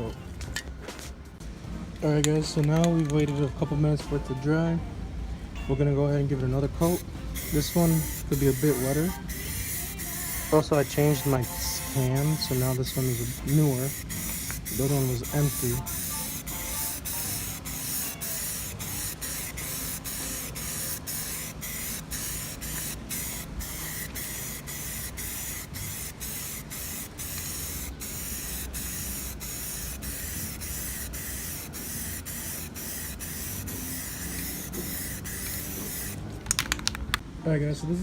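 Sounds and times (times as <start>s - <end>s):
aerosol spray can hissing: 6.8s - 36.6s.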